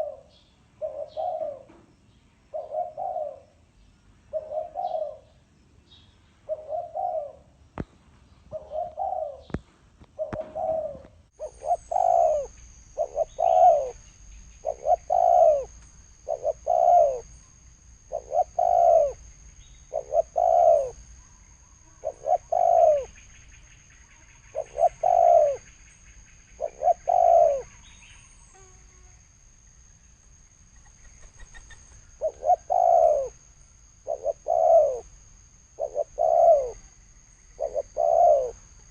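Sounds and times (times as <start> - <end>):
dove cooing: 0.0 - 1.8, 2.5 - 3.6, 4.3 - 5.4, 6.5 - 7.6, 8.5 - 9.6, 10.2 - 14.0, 14.6 - 17.3, 18.1 - 19.3, 19.9 - 21.0, 22.0 - 23.2, 24.5 - 25.7, 26.6 - 27.9, 30.8 - 35.1, 35.7 - 38.9
faint high-pitched whine: 0.0 - 38.9.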